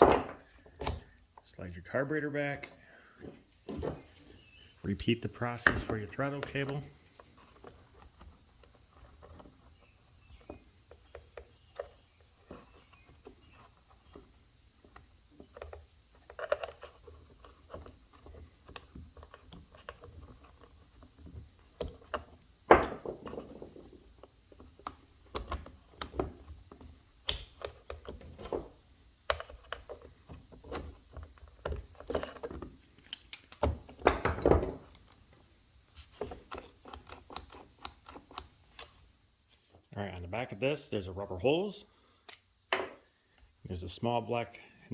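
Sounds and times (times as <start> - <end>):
pliers and small metal parts clattering: 14.8 - 35.4, 36.0 - 39.1.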